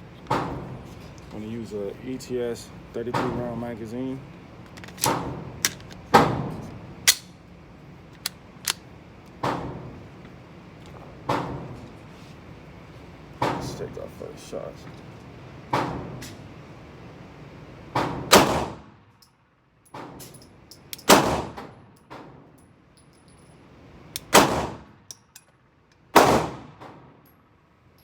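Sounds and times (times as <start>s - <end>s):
pistol shots echoing: 18.3s - 18.9s.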